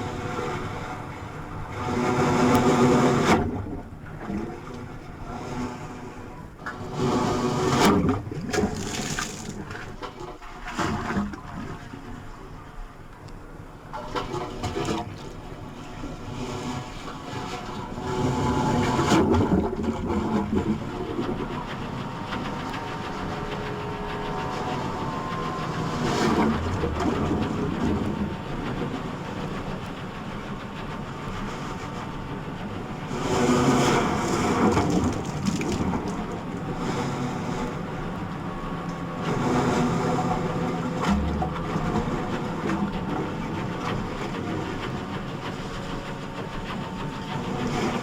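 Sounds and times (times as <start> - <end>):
continuous low rumble: 0.0 - 48.0
washes of sea noise: 14.1 - 48.0.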